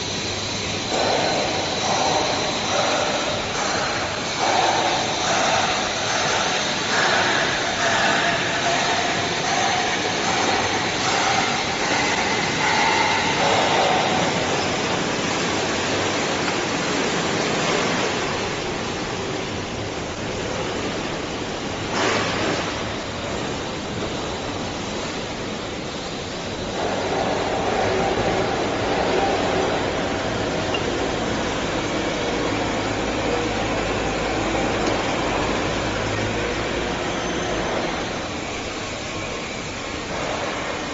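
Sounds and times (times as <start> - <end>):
steady rushing noise: 0.0 - 37.0.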